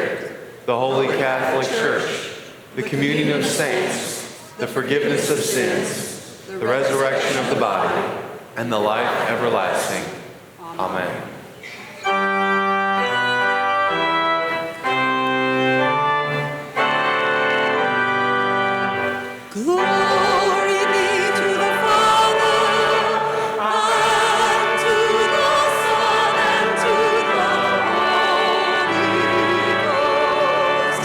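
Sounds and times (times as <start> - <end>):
people singing: 0.0 - 10.2, 19.5 - 31.0
organ playing sustained chords: 12.0 - 31.0.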